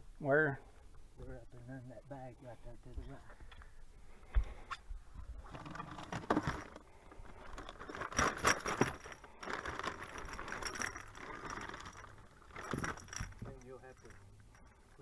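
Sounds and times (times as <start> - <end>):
rummaging through tackle bag: 5.4 - 15.0
small hard items rattling: 5.4 - 15.0.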